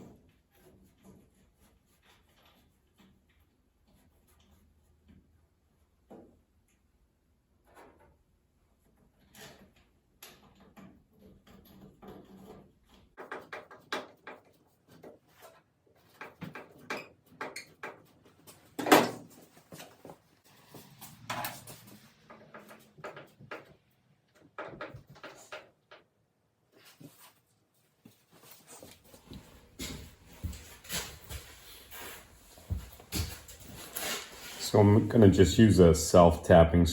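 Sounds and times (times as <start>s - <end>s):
hand tools and metal parts clattering: 9.0s - 26.1s, 28.5s - 35.3s.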